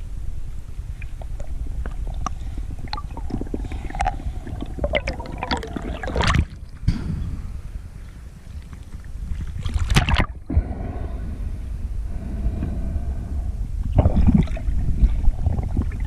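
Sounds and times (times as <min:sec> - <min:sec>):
underwater low rumble: 0:00.0 - 0:16.0
small clicks and gurgling: 0:00.9 - 0:06.8, 0:08.6 - 0:10.4.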